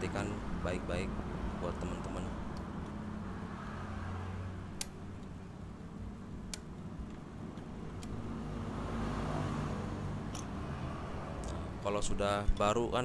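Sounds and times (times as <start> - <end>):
vehicle engine hum: 0.0 - 13.0
sharp metallic clicks: 4.7 - 5.4.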